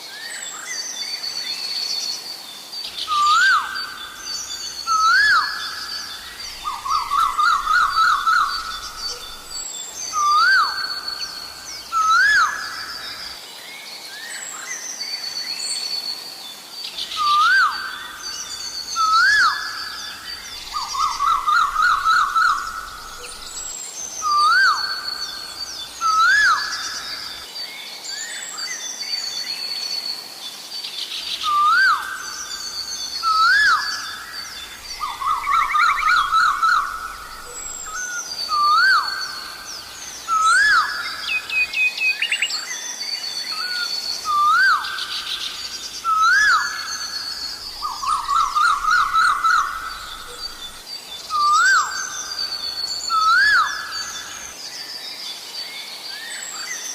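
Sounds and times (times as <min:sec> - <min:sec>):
small birds chirping and trilling: 0:00.2 - 0:56.9
koel calling with whistled notes: 0:04.8 - 0:13.4, 0:18.8 - 0:27.4, 0:31.4 - 0:42.6, 0:43.5 - 0:54.5.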